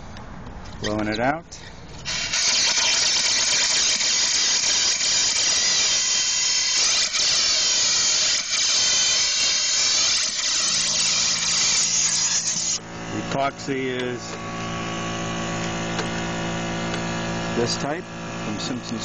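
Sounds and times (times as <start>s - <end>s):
compressed air hissing: 2.0s - 12.8s.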